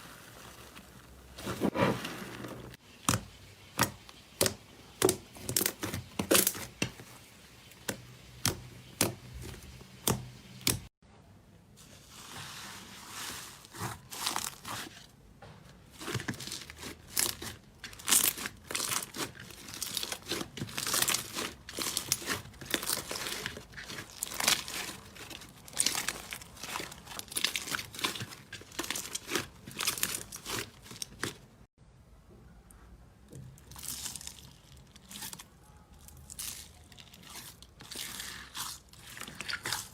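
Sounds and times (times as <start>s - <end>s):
slime crackling and popping: 16.0s - 31.4s.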